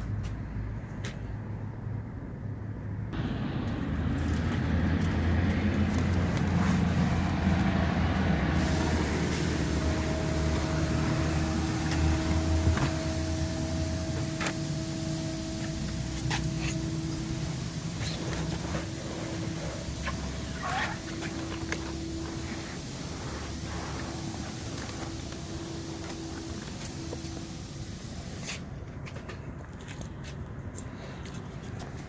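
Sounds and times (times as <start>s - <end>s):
steady whine: 3.1s - 28.9s
pressure washer motor hum: 3.2s - 28.4s
water spray: 4.2s - 28.8s.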